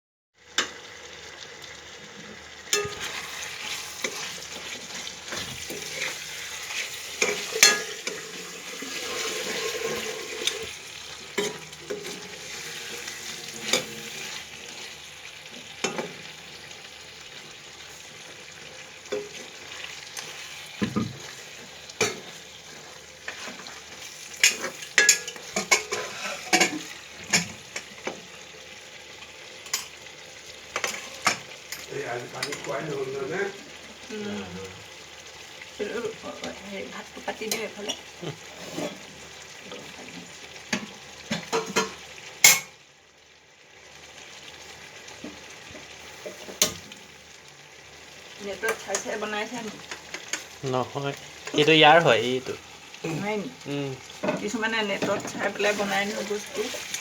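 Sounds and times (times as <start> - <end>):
chicken sizzling in oil: 0.4 - 57.0
spatula knocking and scraping pan: 2.8 - 10.7, 11.4 - 14.9, 15.6 - 16.3, 19.1 - 28.2, 54.2 - 57.0.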